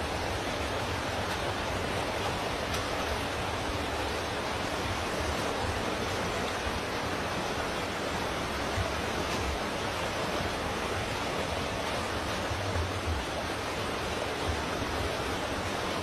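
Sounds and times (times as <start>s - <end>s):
rushing water: 0.0s - 16.0s.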